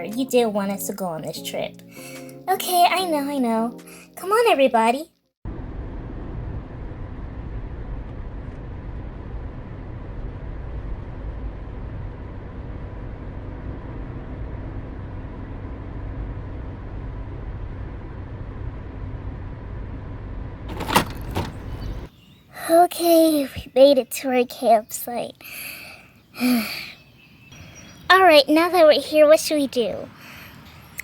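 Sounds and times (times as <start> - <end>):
vehicle engine hum: 5.5 - 22.1
road noise: 5.5 - 22.2, 27.2 - 31.0.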